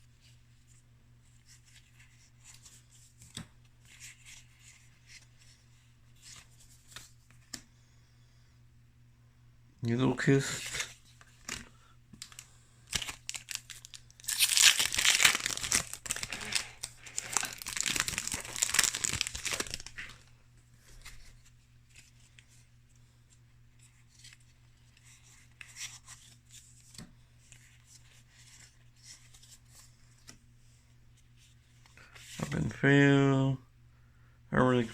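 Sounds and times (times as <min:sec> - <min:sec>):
cards rustling and clicking: 0:01.3 - 0:07.7, 0:10.5 - 0:22.7
foil wrapper tearing and crinkling: 0:12.9 - 0:20.2.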